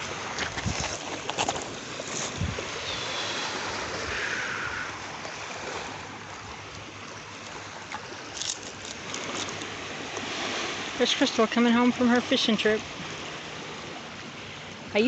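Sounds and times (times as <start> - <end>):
surf on a beach: 0.0 - 15.0.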